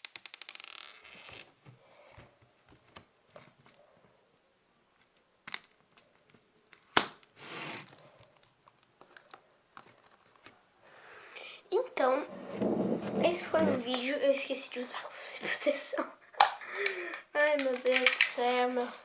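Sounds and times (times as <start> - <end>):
handling rustling and clicks: 4.9 - 10.6, 17.4 - 19.0.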